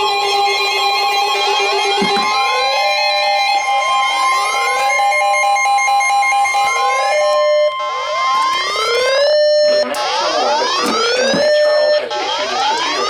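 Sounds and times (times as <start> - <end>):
music: 0.0 - 13.0
two-tone alarm: 0.0 - 13.0.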